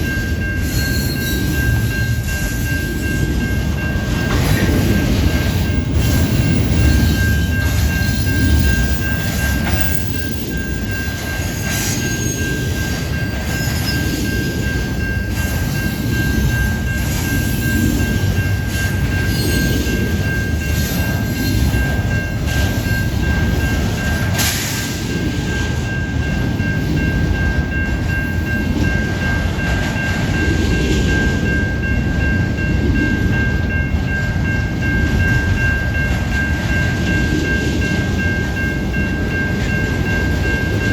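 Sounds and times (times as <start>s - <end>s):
train wheel clicks: 0.0s - 31.6s
freight train cars rumbling: 0.0s - 40.9s.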